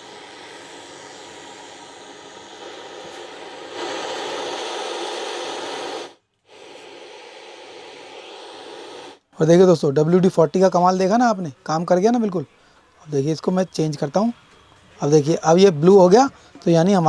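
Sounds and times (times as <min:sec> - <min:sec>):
radio static hissing: 0:09.4 - 0:17.0.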